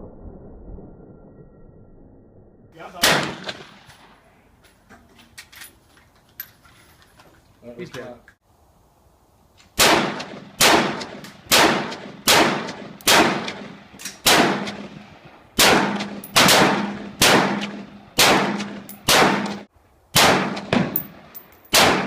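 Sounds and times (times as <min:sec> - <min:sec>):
rifle shots with echoing decay: 0:03.0 - 0:04.2, 0:09.8 - 0:22.0.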